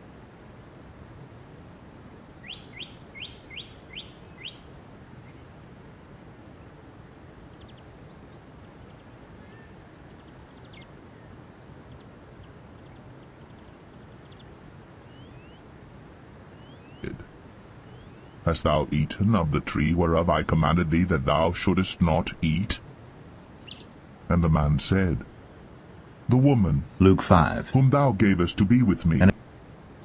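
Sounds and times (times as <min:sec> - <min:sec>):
low outdoor hiss: 0:00.0 - 0:30.0
bird chirping: 0:02.4 - 0:05.5, 0:06.9 - 0:15.7, 0:16.5 - 0:25.3, 0:26.3 - 0:29.3.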